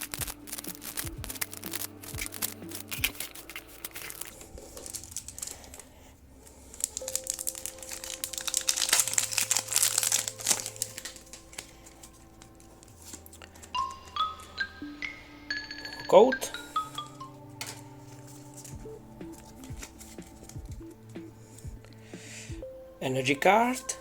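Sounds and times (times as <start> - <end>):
foil wrapper crinkling: 0.0 - 13.8, 17.6 - 20.7
soft background music: 0.0 - 24.0.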